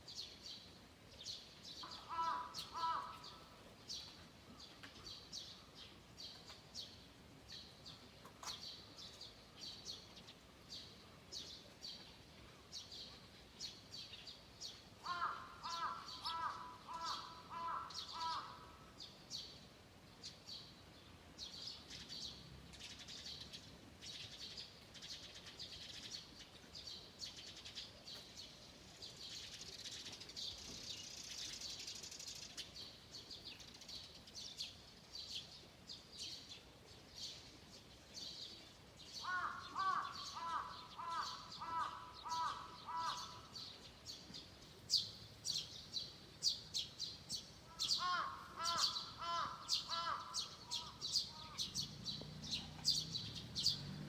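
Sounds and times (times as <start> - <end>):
birds chirping and singing: 1.7 - 5.6, 14.6 - 18.6, 38.2 - 54.0
lower bird call repeating: 1.8 - 3.5, 39.2 - 43.6, 47.7 - 51.8.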